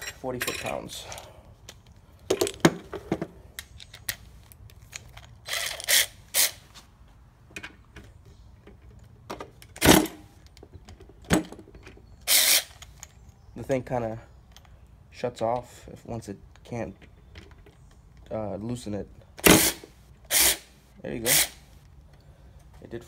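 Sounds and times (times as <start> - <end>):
metal hand tools clinking: 0.0 - 1.3
short noisy bursts: 19.5 - 21.6.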